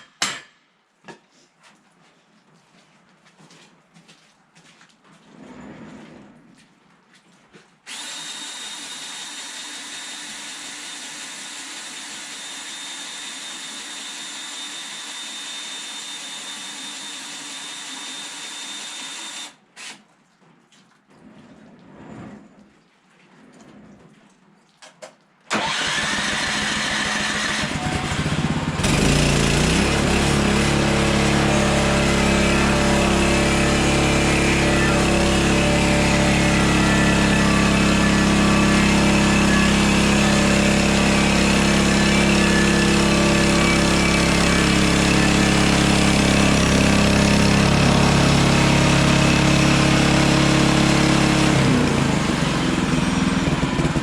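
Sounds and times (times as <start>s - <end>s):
sawmill engine running: 7.9s - 19.5s, 25.5s - 54.0s.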